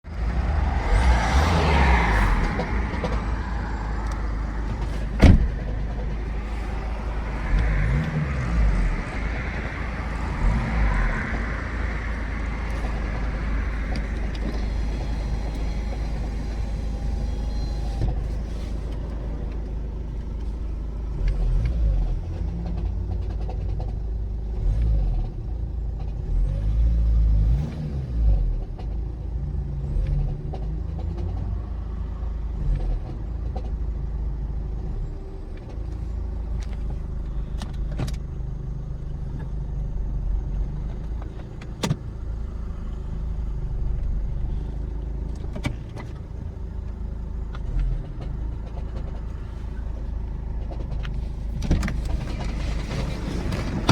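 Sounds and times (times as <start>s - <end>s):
diesel engine rumbling: 0.0s - 53.9s
engine knocking: 42.4s - 53.9s.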